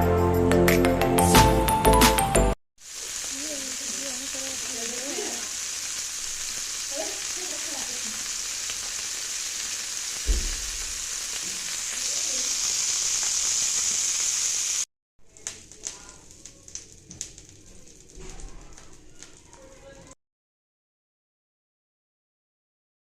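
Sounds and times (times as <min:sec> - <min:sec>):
food sizzling in a pan: 0:02.8 - 0:20.2
dull thump: 0:10.2 - 0:11.6.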